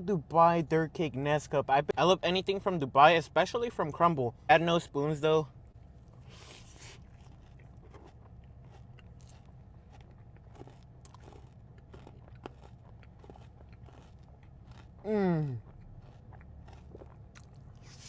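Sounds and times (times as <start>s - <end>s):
crunchy chewing: 5.9s - 18.0s
person humming mmm: 15.0s - 15.6s.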